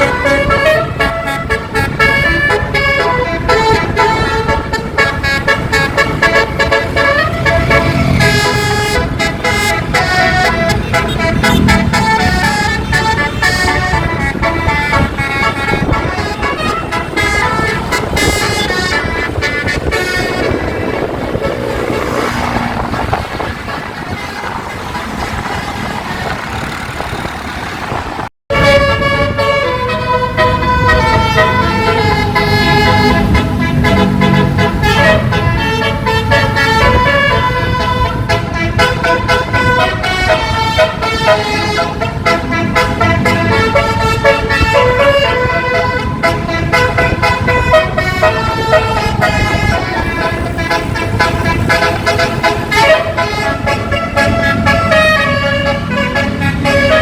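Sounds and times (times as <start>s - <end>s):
bus horn playing fast melody: 0.0s - 57.0s
steady rushing noise: 0.0s - 57.0s.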